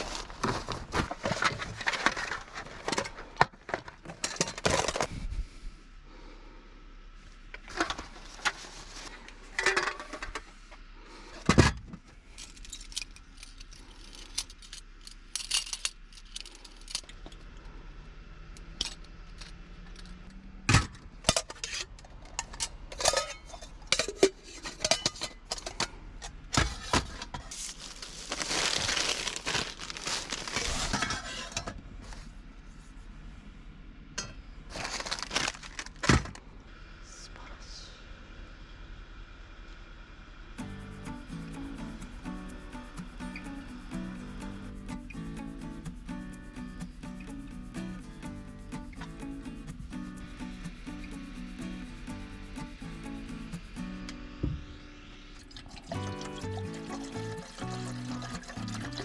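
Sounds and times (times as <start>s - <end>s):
rustling: 0.0s - 3.8s, 27.4s - 33.0s, 34.7s - 36.1s.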